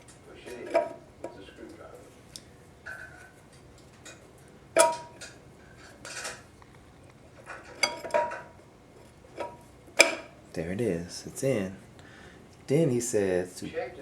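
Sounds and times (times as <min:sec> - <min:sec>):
metal snap ring clinking and scraping: 0:04.8 - 0:06.4, 0:07.4 - 0:10.3.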